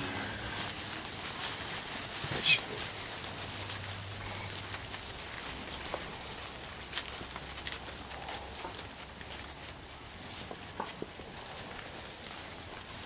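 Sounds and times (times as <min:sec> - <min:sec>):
outdoor hiss: 0:00.0 - 0:07.4
hoof steps: 0:00.0 - 0:13.0
rustling: 0:00.0 - 0:13.0.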